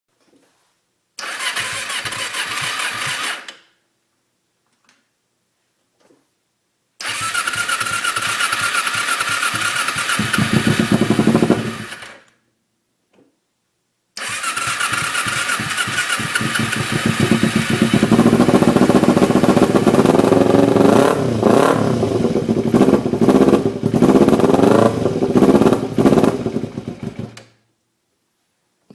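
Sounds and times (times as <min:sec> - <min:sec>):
motorcycle engine cranking on starter: 0:01.2 - 0:03.6, 0:07.0 - 0:12.3, 0:14.2 - 0:19.4, 0:26.3 - 0:27.6.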